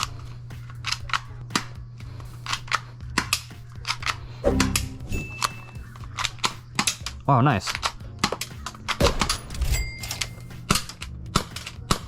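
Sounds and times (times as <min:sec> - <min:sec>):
brief low buzz: 0:04.4 - 0:05.2.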